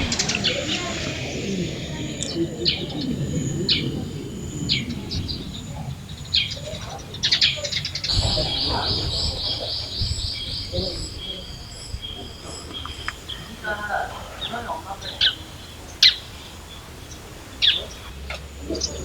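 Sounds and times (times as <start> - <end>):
murmur of voices: 0.0 - 19.0
small birds chirping: 0.0 - 19.0
fast repeated high bird notes: 8.1 - 18.1.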